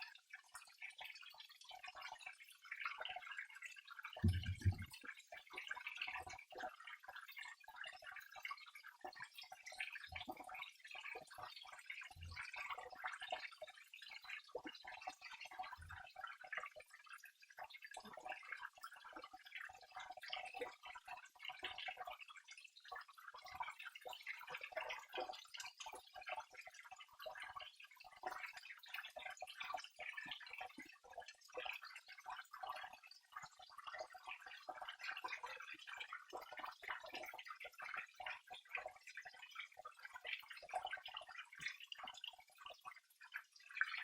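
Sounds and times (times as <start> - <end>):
water trickling and dripping: 0.0 - 44.0
soft low thumps: 4.2 - 4.9.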